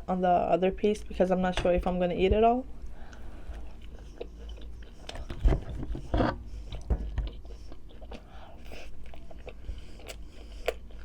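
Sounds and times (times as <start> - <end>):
person chewing and biting food: 3.1 - 11.0.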